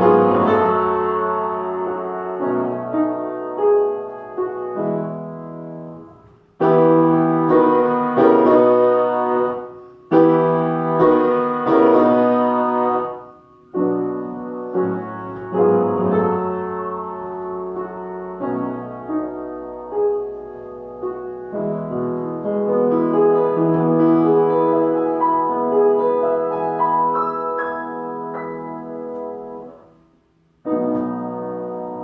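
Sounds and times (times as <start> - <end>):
solo piano classical piece: 0.0 - 32.0.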